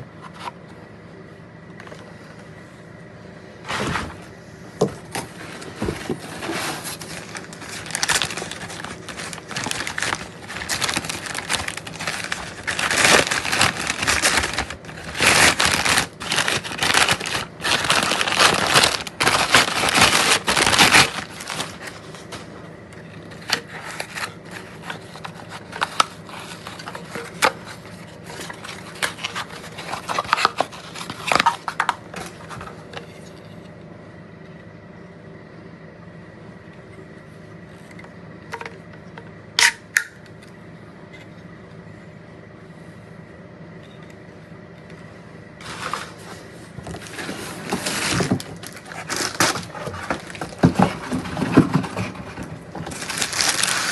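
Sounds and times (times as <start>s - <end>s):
packaging crinkling: 5.2s - 22.6s, 23.2s - 33.0s, 45.6s - 53.9s.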